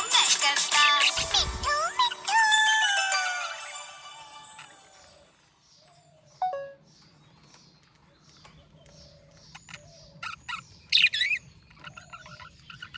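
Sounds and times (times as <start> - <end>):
budgerigar chirping: 9.5 - 12.9.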